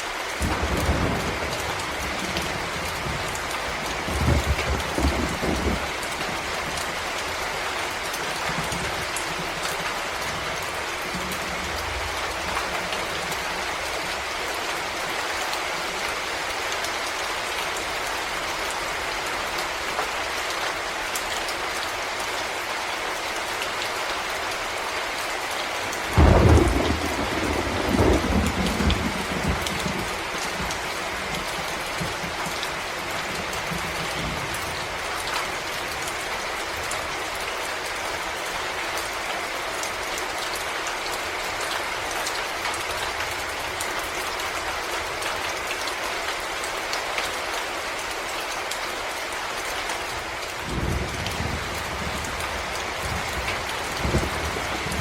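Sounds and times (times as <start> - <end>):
rain falling in a forest: 0.0 - 55.0
thunder clap and rumble: 0.4 - 13.8, 26.1 - 36.0, 50.5 - 55.0.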